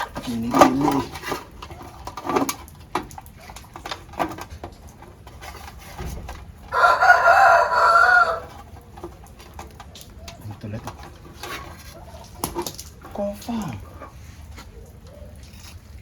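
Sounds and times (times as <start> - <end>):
rooster crowing: 6.7 - 8.7.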